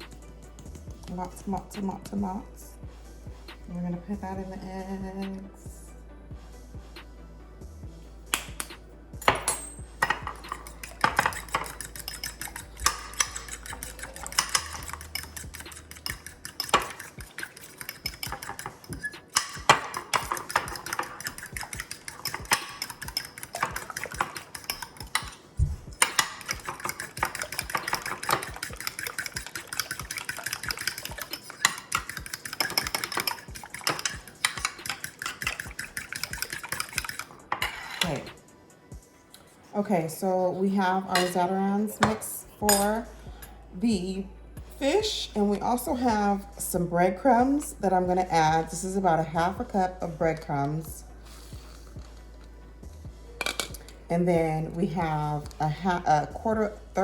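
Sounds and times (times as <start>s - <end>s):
eggs beaten in a bowl: 0.0s - 2.5s, 8.3s - 39.0s, 43.9s - 52.1s.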